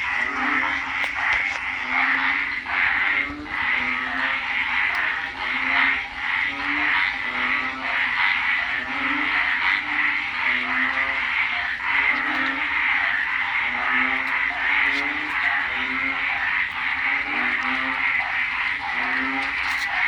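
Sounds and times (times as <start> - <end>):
deep frog croaks: 0.0 - 20.0
high-pitched frog chorus: 0.0 - 20.0.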